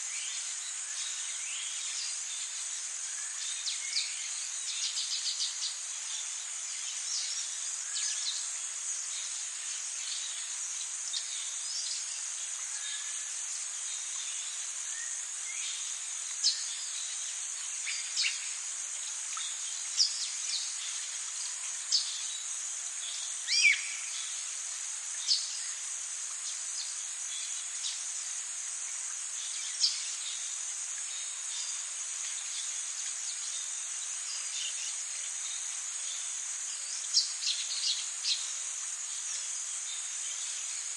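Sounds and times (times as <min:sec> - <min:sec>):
high-pitched insect chorus: 0:00.0 - 0:40.9.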